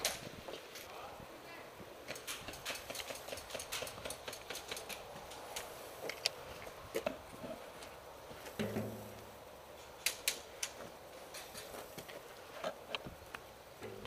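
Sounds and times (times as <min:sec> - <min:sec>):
sharp irregular clicks and snaps: 0:02.0 - 0:07.2, 0:09.8 - 0:13.5.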